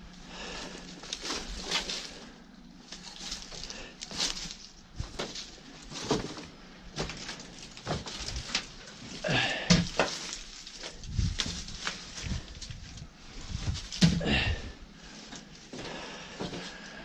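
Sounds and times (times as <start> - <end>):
footsteps crunching through brush: 0.5 - 16.8
person grunting: 9.2 - 9.9, 14.0 - 14.8.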